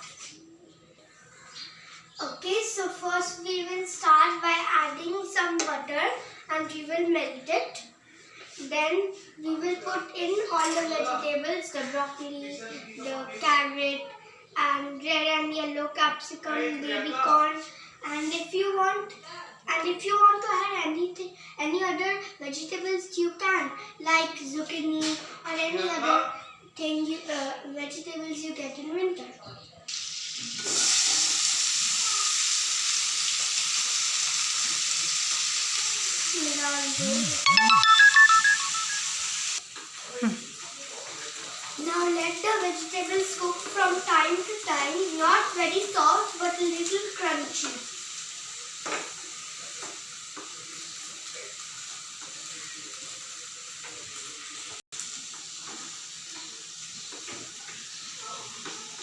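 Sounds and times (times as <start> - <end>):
vegetables sizzling in a pan: 29.9 - 59.0.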